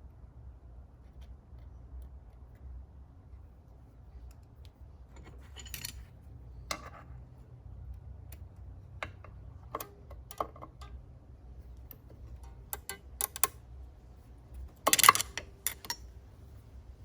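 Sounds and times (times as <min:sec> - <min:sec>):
low steady hum: 0:00.0 - 0:17.0
small metal parts clicking: 0:05.1 - 0:06.1, 0:11.8 - 0:13.6, 0:14.6 - 0:16.1
metal parts rattling scrape: 0:05.1 - 0:06.2, 0:14.8 - 0:16.0.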